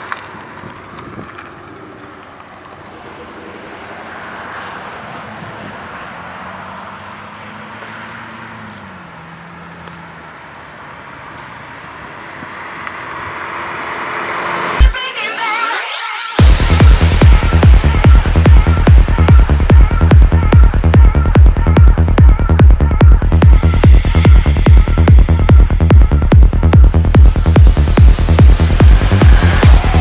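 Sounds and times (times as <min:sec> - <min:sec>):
car engine drone: 0:00.0 - 0:30.0
rushing noise: 0:12.1 - 0:30.0.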